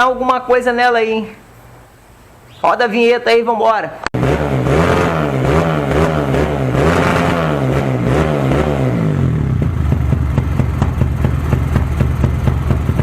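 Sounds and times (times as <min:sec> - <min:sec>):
motorcycle engine revving: 0:04.2 - 0:13.0.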